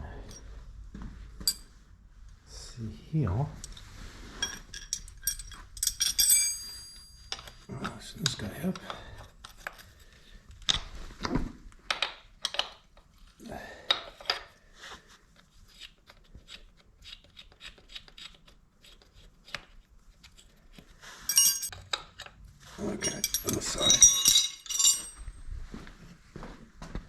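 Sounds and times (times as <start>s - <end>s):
ringing metallic clink: 4.4s - 7.7s, 21.3s - 21.7s, 23.0s - 25.3s
hand tools clicking on metal: 22.9s - 25.2s.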